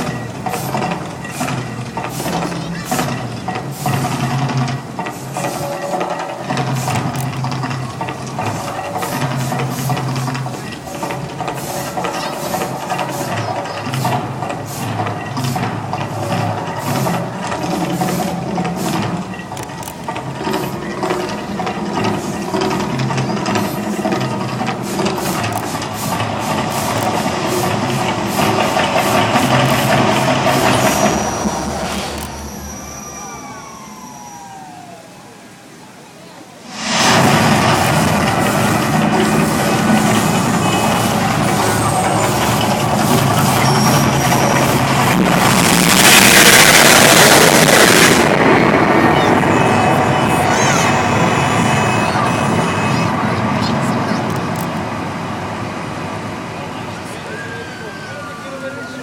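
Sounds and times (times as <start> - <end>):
hissing and rushing fire effects: 6.4 - 34.3, 36.6 - 56.6
falling siren-like wail: 30.8 - 36.0, 57.0 - 59.0.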